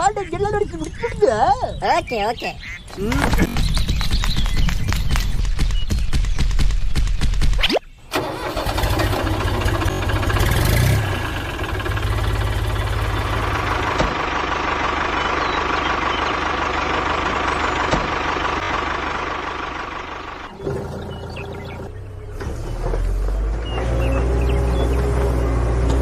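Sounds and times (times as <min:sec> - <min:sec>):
engine running: 0:08.1 - 0:26.0.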